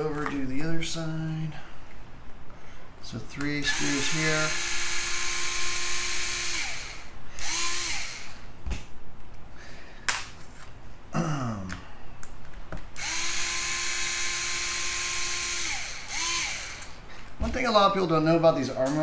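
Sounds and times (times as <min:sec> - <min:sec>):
cordless screwdriver whining: 0:03.6 - 0:08.4, 0:13.0 - 0:17.0.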